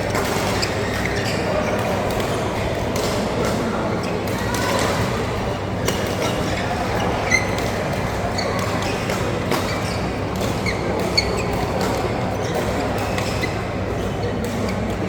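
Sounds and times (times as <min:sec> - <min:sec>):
hall hubbub: 0:00.0 - 0:15.0
shoe squeaks on court floor: 0:00.1 - 0:02.6, 0:05.8 - 0:14.9.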